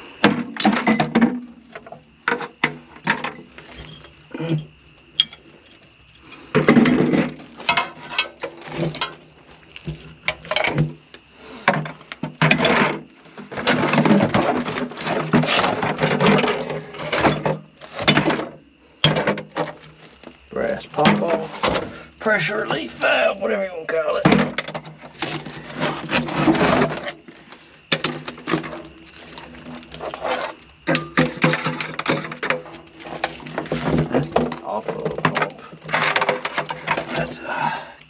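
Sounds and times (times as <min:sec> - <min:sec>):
metal parts clanking: 0:03.0 - 0:05.8, 0:06.6 - 0:09.2, 0:27.9 - 0:37.4
metal rattling and scraping: 0:05.2 - 0:10.9, 0:11.6 - 0:20.2, 0:24.2 - 0:37.6.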